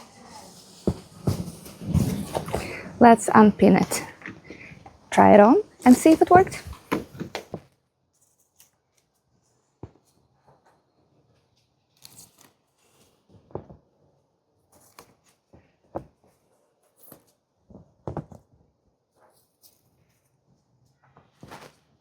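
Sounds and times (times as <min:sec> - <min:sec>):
knitted fabric rustling: 0:00.0 - 0:07.5.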